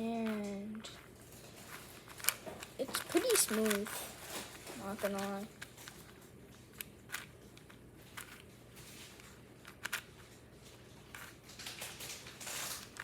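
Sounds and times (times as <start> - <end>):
puzzle cube layers clicking: 1.7 - 4.0.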